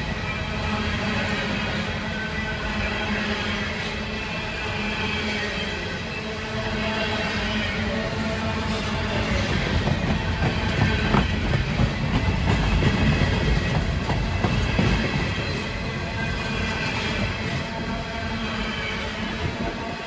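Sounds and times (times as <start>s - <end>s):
train cars rolling on rails: 0.0s - 20.0s
clickety-clack over rail joints: 8.2s - 20.0s.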